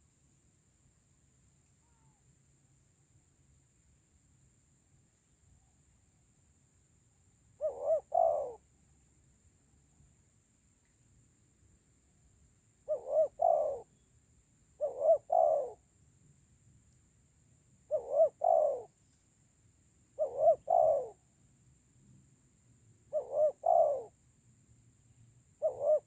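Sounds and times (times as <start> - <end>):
dove cooing: 7.6 - 8.6, 12.8 - 14.0, 14.8 - 15.8, 17.9 - 18.9, 20.2 - 21.2, 23.1 - 24.2, 25.6 - 26.0.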